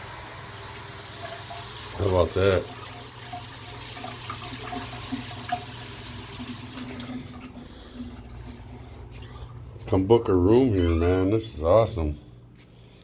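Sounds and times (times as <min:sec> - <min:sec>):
shower water pouring: 0:00.0 - 0:09.6.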